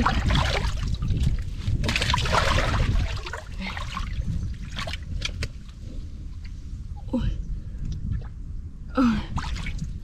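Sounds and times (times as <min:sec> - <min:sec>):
small water splashes: 0:00.0 - 0:05.5
water sloshing and trickling: 0:00.0 - 0:06.8, 0:09.3 - 0:10.0
steady low rumble: 0:00.0 - 0:10.0.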